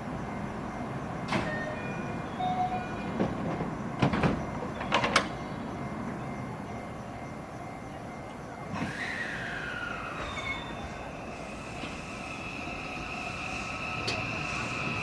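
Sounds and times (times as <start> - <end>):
station background noise: 0.0 - 15.0
sliding doors clunking shut: 1.2 - 1.8, 3.0 - 5.4, 13.9 - 15.0.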